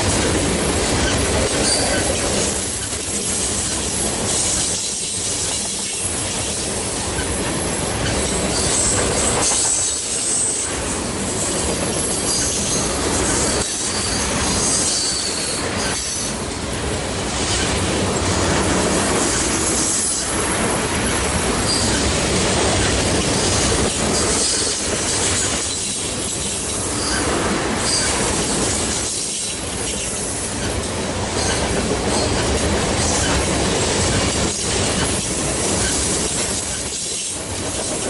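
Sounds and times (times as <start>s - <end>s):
train wheels clacking over rail joints: 0.0s - 38.0s
high wheel squeals: 7.2s - 10.7s, 11.4s - 16.4s, 21.6s - 22.1s.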